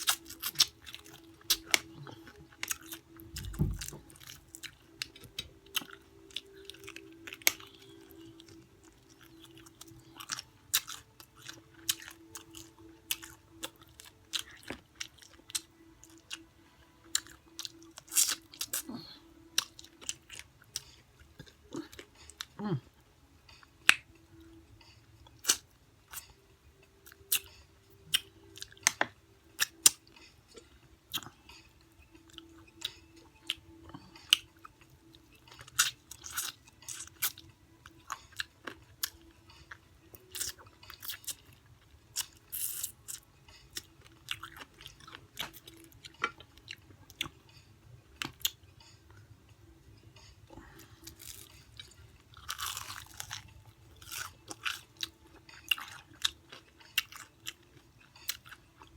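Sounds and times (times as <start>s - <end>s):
crunching fried chicken: 50.6s - 57.6s.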